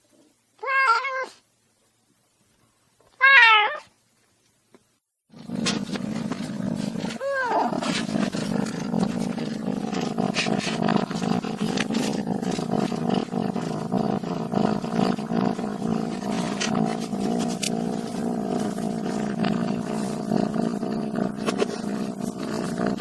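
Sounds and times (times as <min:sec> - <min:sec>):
cat yowling: 0:00.6 - 0:01.4, 0:03.2 - 0:03.9, 0:07.2 - 0:07.7
cat growling: 0:05.3 - 0:23.0.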